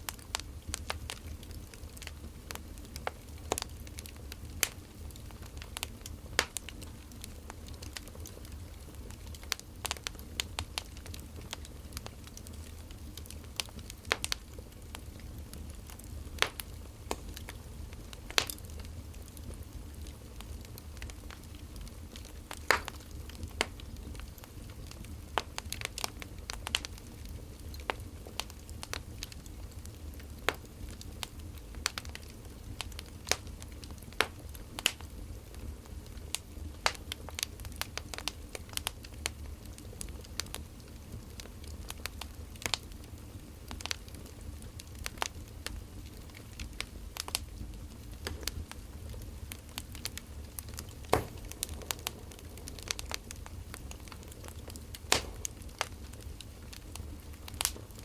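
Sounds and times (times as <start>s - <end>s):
firewood crackling and popping: 0.0s - 58.0s
low steady rumble: 47.0s - 58.0s.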